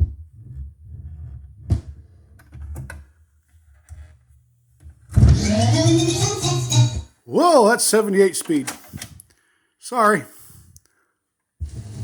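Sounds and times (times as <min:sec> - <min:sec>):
sped-up record music: 0:05.2 - 0:07.1.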